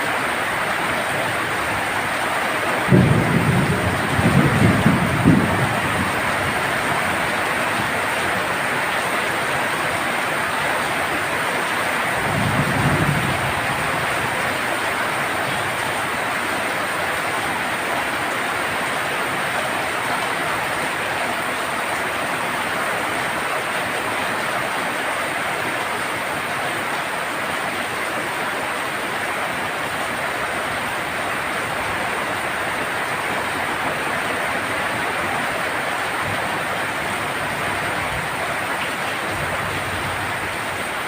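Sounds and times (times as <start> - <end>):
heavy rain on a tin roof: 0.0 - 41.0
low rumble of thunder: 2.9 - 7.6, 12.2 - 14.4.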